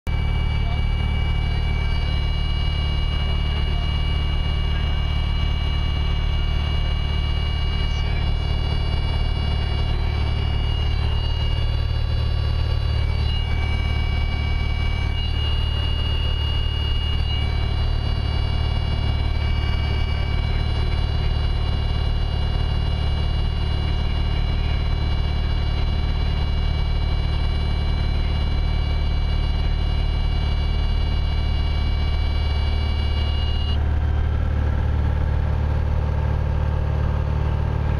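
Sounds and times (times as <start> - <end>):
high whines: 0.1 - 27.7, 28.4 - 37.9
airplane engine and propeller drone: 0.1 - 37.9.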